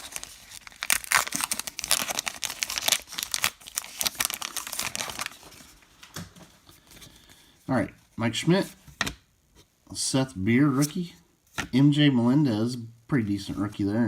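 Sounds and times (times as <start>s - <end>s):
wrapper tearing and crinkling: 0.0s - 5.8s.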